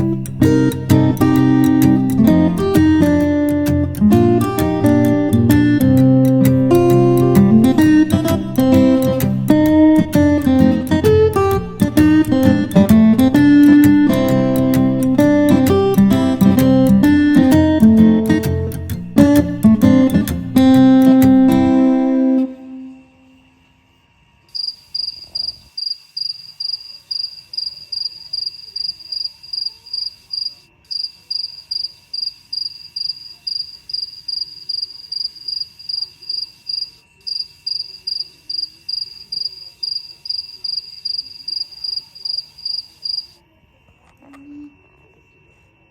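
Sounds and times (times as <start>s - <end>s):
cricket chirping: 22.9s - 43.4s.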